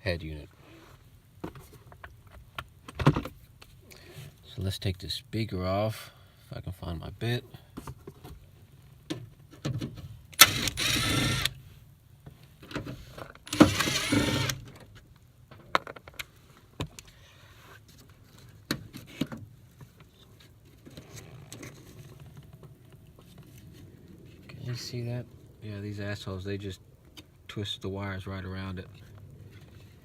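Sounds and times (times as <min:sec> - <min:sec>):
cordless drill running: 0:10.4 - 0:11.6, 0:13.5 - 0:14.6.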